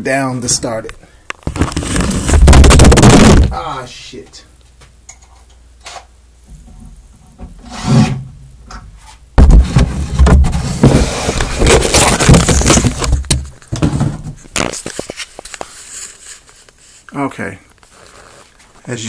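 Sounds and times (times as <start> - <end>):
knocks: 9.4 - 11.0.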